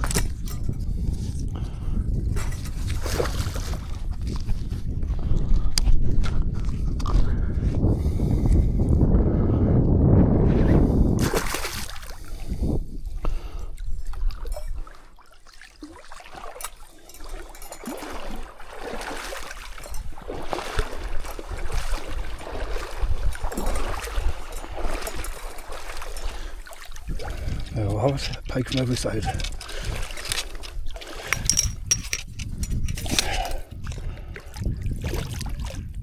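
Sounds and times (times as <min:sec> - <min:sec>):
water splashing and trickling: 0:00.0 - 0:04.7, 0:11.2 - 0:36.0.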